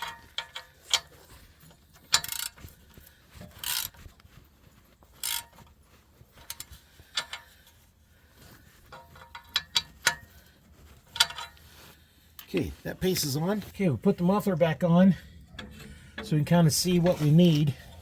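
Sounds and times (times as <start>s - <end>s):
ratchet wrench clicking: 2.1s - 2.6s, 3.6s - 3.9s, 5.2s - 5.5s.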